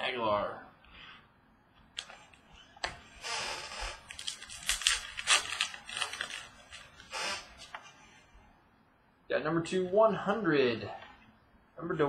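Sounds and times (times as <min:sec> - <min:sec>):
trading cards and wrappers rustling: 0:03.9 - 0:07.8.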